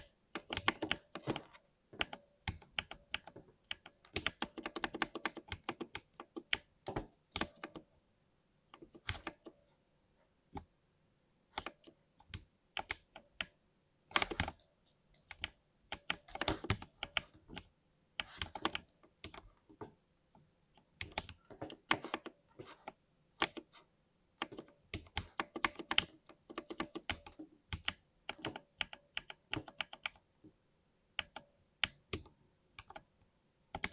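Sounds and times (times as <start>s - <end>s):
mechanical keyboard typing: 0.0s - 7.9s, 9.0s - 9.5s, 11.6s - 19.4s, 21.0s - 23.7s, 24.4s - 30.2s.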